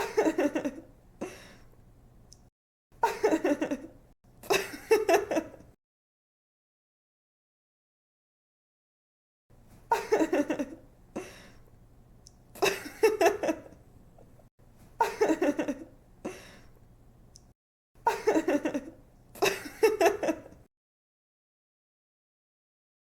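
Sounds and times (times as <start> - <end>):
young woman giggling: 0.0 - 0.9, 9.9 - 10.8, 15.0 - 15.9, 18.1 - 20.6.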